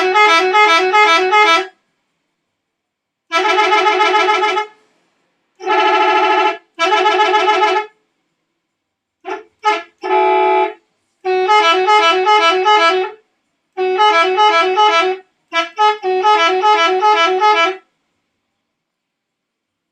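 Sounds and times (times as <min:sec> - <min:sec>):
bus horn playing melodies: 0:00.0 - 0:01.8, 0:03.3 - 0:04.8, 0:05.6 - 0:08.0, 0:09.2 - 0:17.9.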